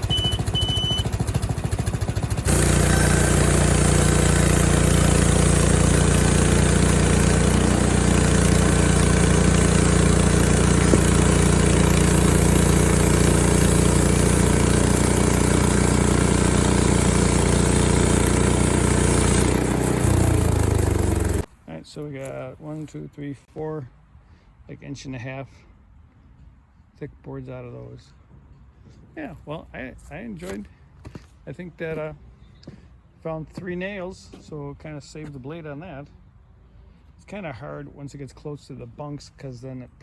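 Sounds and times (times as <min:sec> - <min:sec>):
sawmill gas engine droning: 0:00.0 - 0:21.5.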